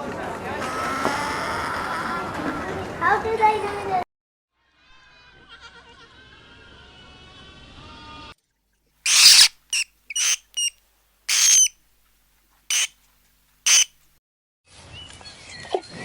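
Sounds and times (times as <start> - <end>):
animal giving short harsh calls: 0.6 - 2.3, 9.1 - 10.7, 11.3 - 11.7, 13.7 - 13.9.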